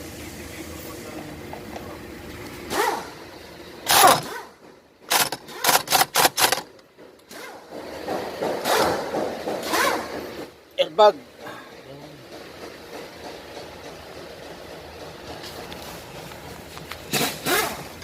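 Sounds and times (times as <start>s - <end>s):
sharp knocks: 7.7s - 10.2s.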